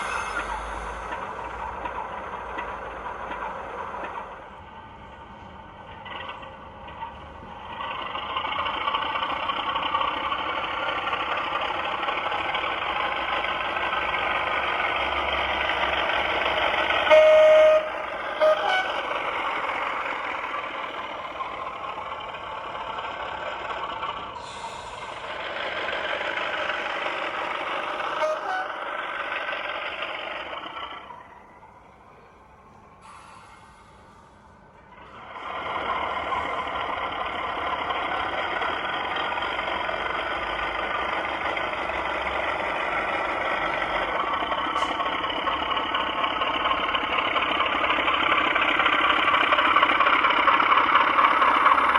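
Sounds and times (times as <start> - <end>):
diesel locomotive engine sound: 0.0 - 51.9
locomotive horn blasts: 16.9 - 20.3, 28.1 - 29.1.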